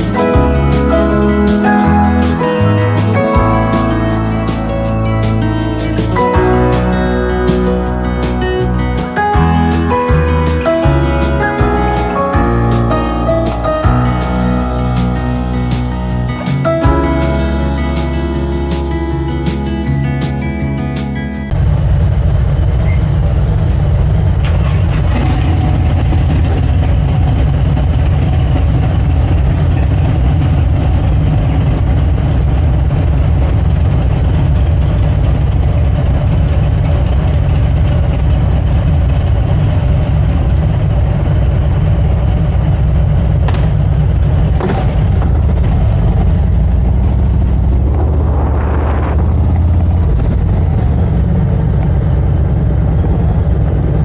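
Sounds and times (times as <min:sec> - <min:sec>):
vehicle engine rumble: 0:00.0 - 0:54.0
brief rising sound: 0:47.0 - 0:51.3.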